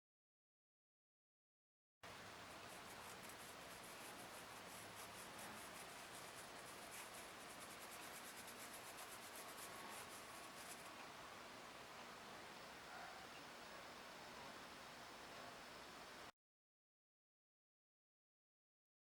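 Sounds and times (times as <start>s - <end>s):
faint quick rubbing strokes: 2.3s - 11.3s.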